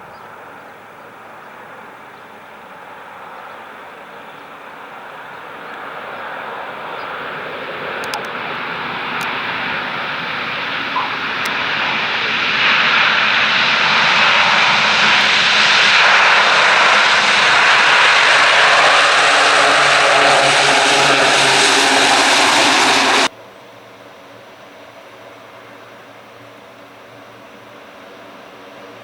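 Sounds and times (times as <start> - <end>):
wind: 0.0 - 29.0
turboprop engines roaring: 5.1 - 23.3.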